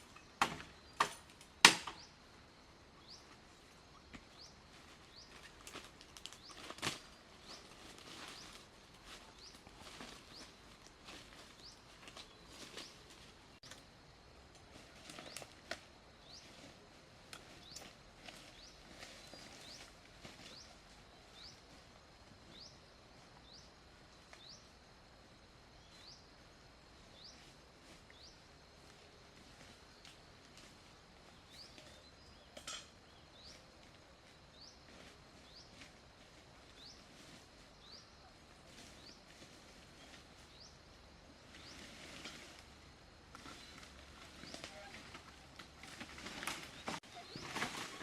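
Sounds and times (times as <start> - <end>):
background hiss: 0.0 - 48.0.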